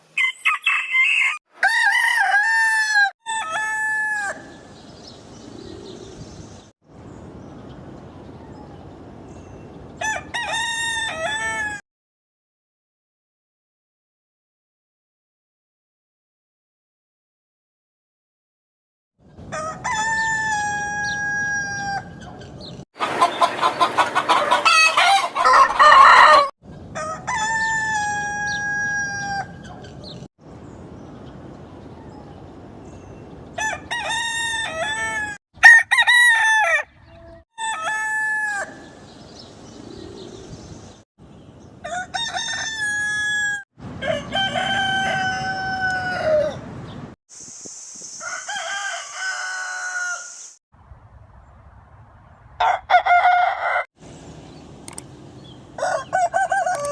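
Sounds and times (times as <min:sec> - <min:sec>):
roosters crowing: 0:00.0 - 0:06.2, 0:10.0 - 0:11.8, 0:19.4 - 0:30.2, 0:33.5 - 0:40.6, 0:41.6 - 0:46.9, 0:48.2 - 0:50.6, 0:52.6 - 0:53.9, 0:55.6 - 0:56.9.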